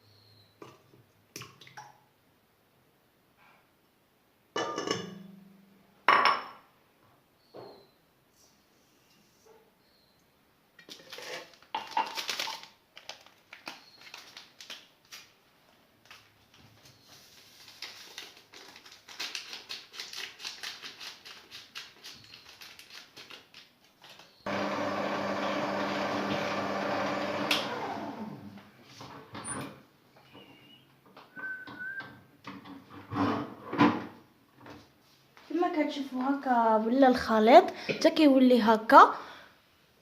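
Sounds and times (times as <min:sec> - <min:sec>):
electric mixer running: 0:24.5 - 0:28.6.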